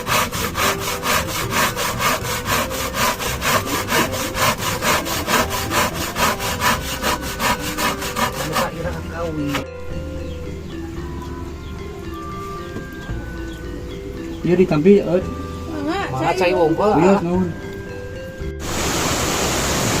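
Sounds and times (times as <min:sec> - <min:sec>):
hand saw cutting wood: 0:00.0 - 0:09.7.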